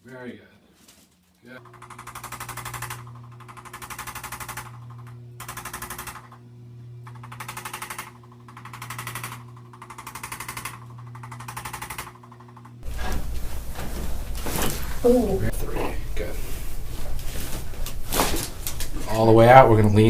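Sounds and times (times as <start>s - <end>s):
massager motor hum: 1.5s - 20.0s
massager rapid hammering strikes: 1.6s - 6.4s, 7.0s - 13.1s.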